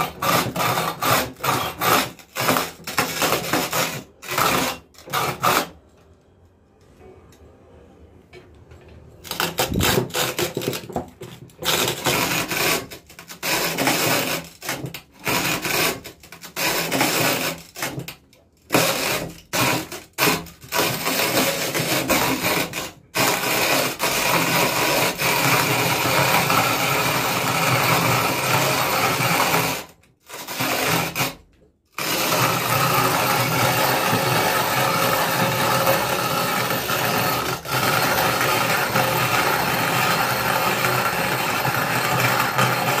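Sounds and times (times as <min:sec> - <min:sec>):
mixer grinder motor: 0:00.0 - 0:05.7, 0:09.3 - 0:11.0, 0:18.7 - 0:31.3, 0:32.0 - 0:43.0.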